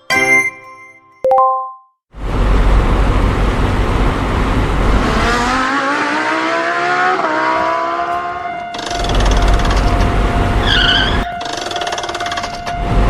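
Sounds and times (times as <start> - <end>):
rushing vehicle accelerating: 2.2 - 13.0.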